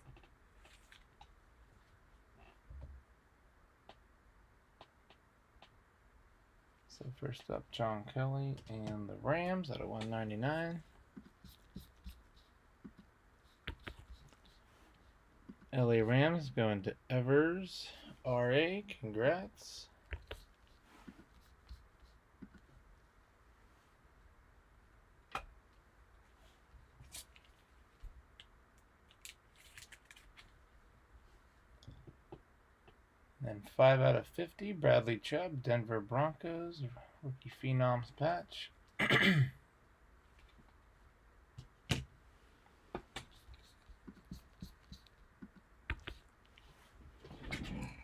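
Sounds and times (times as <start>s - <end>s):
trading cards clicking and tapping: 43.0s - 46.3s.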